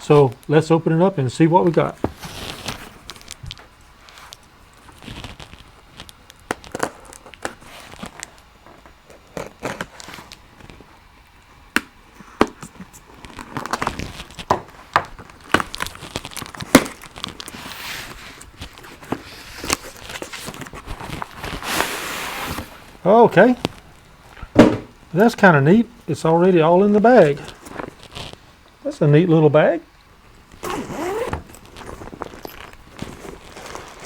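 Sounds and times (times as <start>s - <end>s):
sliding and rustling: 1.7s - 10.9s, 12.2s - 25.6s, 26.2s - 28.6s, 30.4s - 34.0s
packaging crinkling and tearing: 2.1s - 10.9s, 12.6s - 24.5s, 26.8s - 28.4s, 30.4s - 34.0s.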